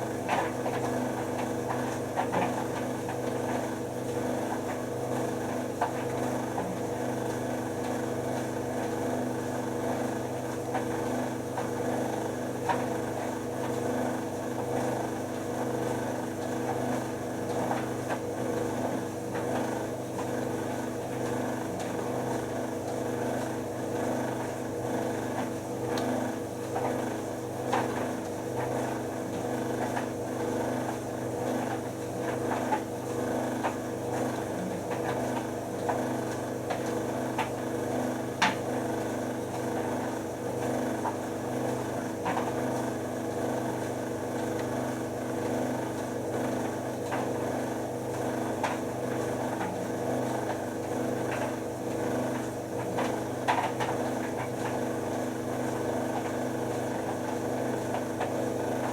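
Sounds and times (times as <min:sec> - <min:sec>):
tumble dryer motor and drum hum: 0:00.0 - 0:58.9.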